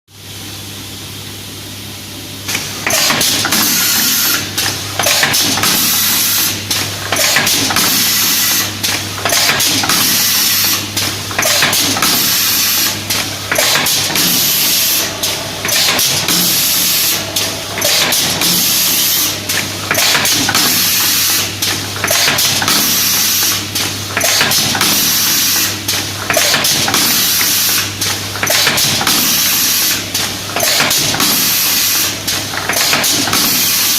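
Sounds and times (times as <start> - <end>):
motor hum: 3.0 - 23.3
loud rushing hiss: 13.9 - 19.8.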